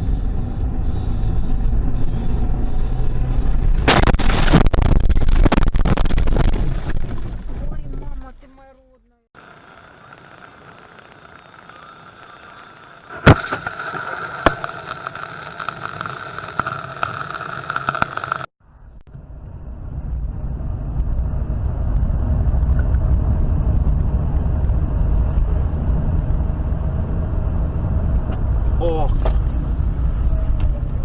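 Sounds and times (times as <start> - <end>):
vehicle driving rumble: 0.0 - 31.0
car crash impact: 3.7 - 7.8.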